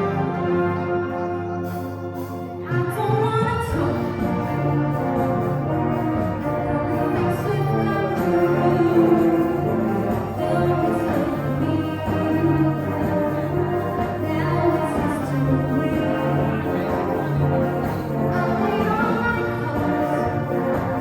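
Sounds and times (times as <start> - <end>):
orchestra playing sustained chords: 0.0 - 21.0
singing: 7.1 - 21.0.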